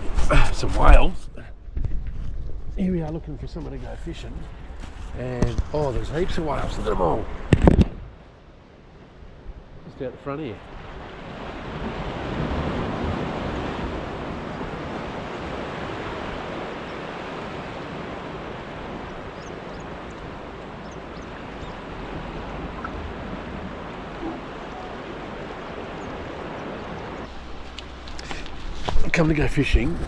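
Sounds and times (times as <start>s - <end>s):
ocean surf breaking: 9.7s - 29.7s.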